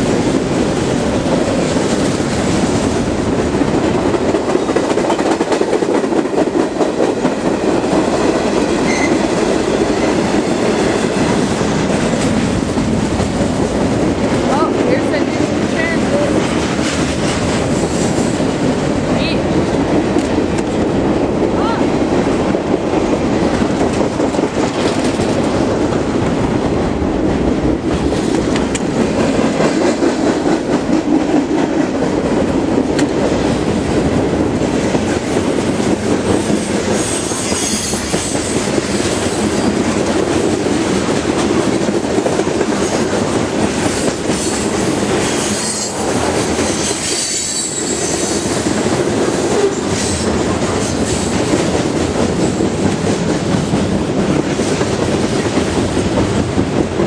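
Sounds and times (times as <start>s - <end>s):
clickety-clack over rail joints: 0.0s - 57.0s
train wheels rumbling on rail: 0.0s - 57.0s
high wheel squeal: 8.9s - 9.2s, 46.8s - 48.5s.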